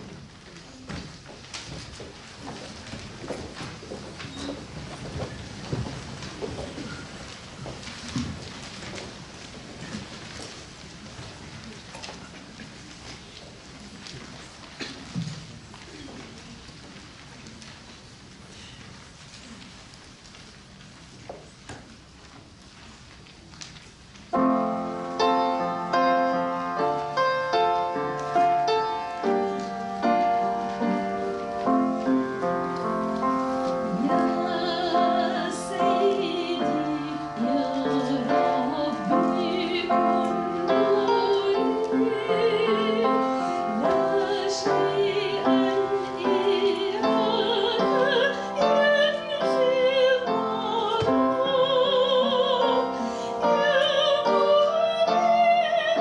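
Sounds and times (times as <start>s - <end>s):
person singing with vibrato: 33.8s - 56.0s.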